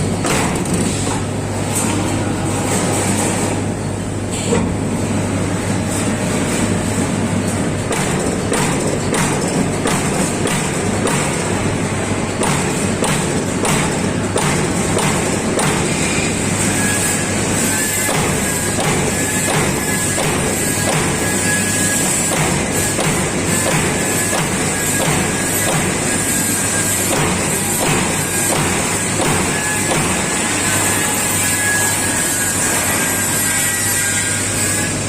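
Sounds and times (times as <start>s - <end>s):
punch press strikes: 12.4s - 16.0s.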